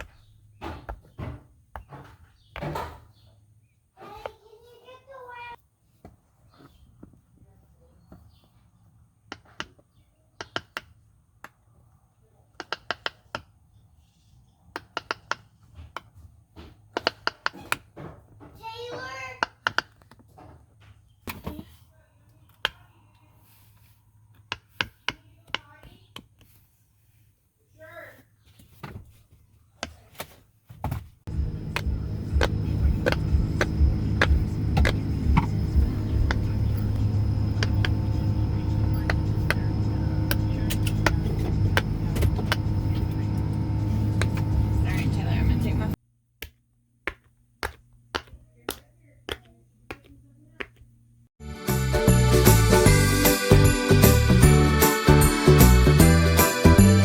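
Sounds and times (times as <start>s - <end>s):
steady low drone: 31.3s - 46.0s.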